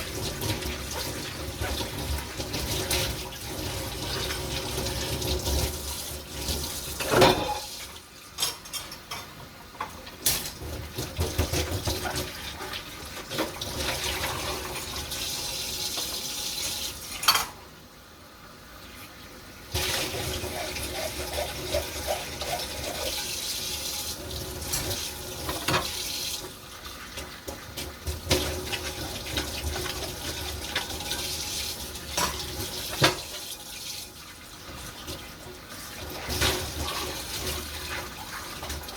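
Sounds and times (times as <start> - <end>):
tap water running into sink: 0.0 - 8.0, 10.3 - 17.3, 19.7 - 38.9
dishes clinking: 7.0 - 7.8, 8.4 - 10.6, 17.2 - 17.6.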